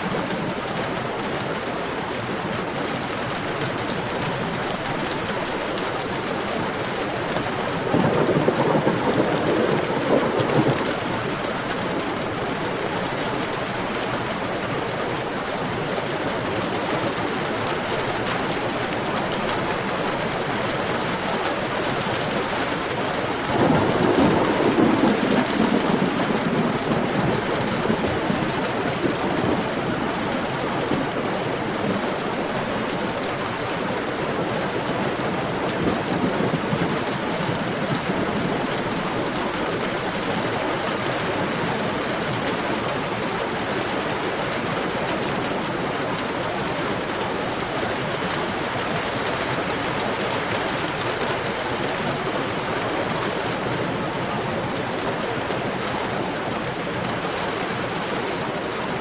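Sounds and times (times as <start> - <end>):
heavy rain: 0.0 - 59.0
thunder rumble: 7.7 - 12.4, 22.9 - 33.2.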